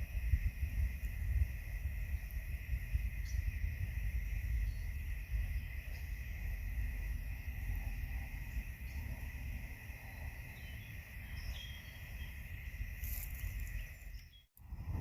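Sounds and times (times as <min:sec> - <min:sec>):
high-pitched insect drone: 0:00.0 - 0:14.4
wind rumble on microphone: 0:00.0 - 0:15.0.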